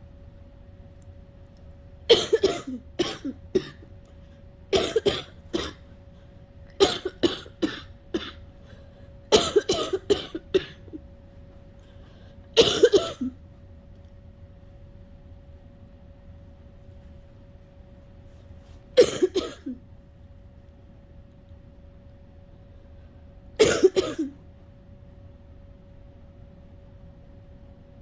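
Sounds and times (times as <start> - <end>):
person coughing: 2.1 - 3.9, 4.7 - 5.9, 6.8 - 11.0, 12.6 - 13.4, 19.0 - 19.8, 23.6 - 24.4.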